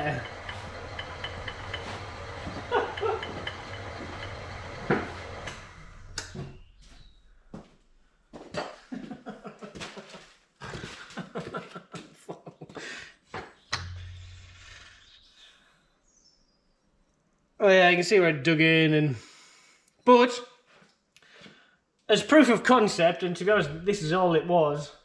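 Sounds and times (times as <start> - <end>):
electric motor humming: 0.0 - 6.5.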